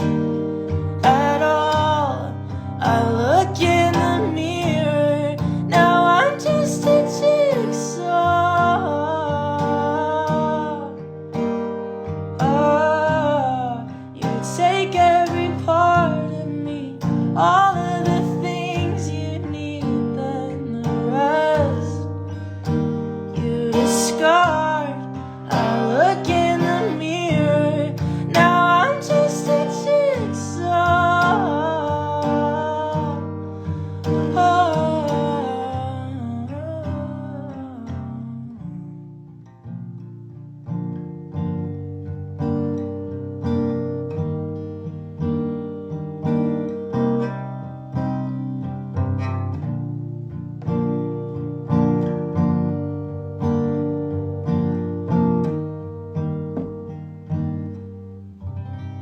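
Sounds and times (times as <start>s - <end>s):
person singing: 0.0s - 11.0s, 12.4s - 22.3s, 23.4s - 38.8s
acoustic guitar chords: 0.0s - 59.0s.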